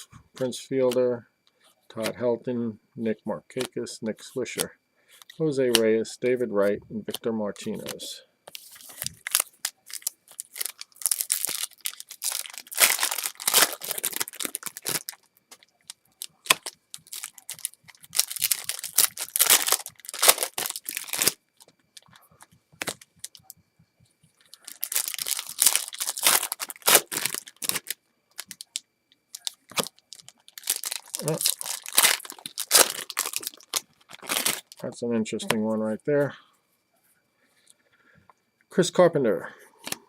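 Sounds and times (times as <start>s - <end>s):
cards rustling: 6.6s - 21.4s, 24.5s - 28.8s, 29.4s - 34.8s
foil wrappers tearing and crinkling: 7.6s - 21.4s, 22.8s - 23.5s, 24.5s - 28.8s, 29.4s - 34.8s.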